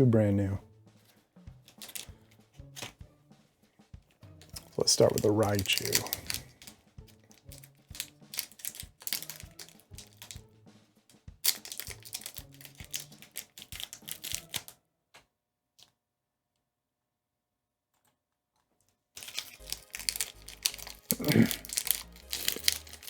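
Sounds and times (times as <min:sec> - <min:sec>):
foil wrapper crinkling: 0:01.6 - 0:03.0, 0:04.4 - 0:10.5, 0:11.4 - 0:14.8, 0:19.2 - 0:23.0.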